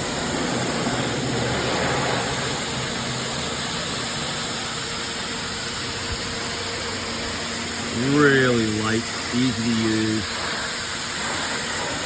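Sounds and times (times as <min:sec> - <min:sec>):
high-pressure water jet hissing: 0:00.0 - 0:12.0
pump motor hum: 0:00.0 - 0:12.0.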